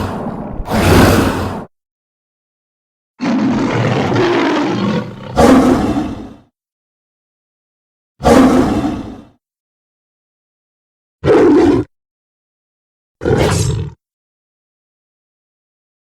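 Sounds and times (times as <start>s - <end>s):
creature growling roar: 0.0s - 1.7s, 3.2s - 6.4s, 8.2s - 9.3s, 11.2s - 11.9s, 13.2s - 14.0s.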